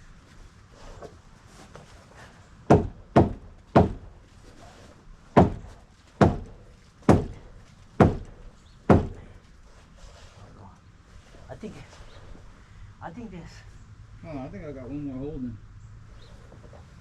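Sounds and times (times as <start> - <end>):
hammer striking lumber: 2.7 - 4.2, 5.4 - 9.3.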